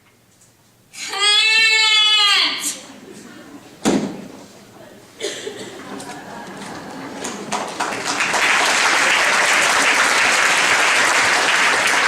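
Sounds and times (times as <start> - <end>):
audience applauding: 5.8 - 12.0.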